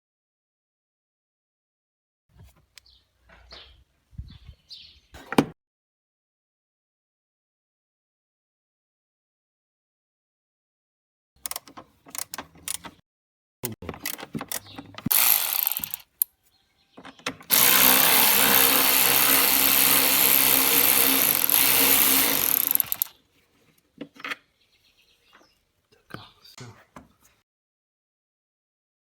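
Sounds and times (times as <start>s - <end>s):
tools being handled: 13.9s - 16.3s, 19.4s - 23.1s
cordless power tool running: 15.1s - 16.1s, 17.5s - 23.1s.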